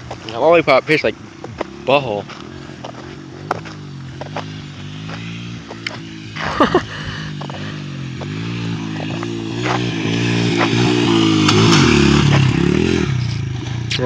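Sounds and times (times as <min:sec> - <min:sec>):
dirt bike engine revving: 0:00.0 - 0:14.0.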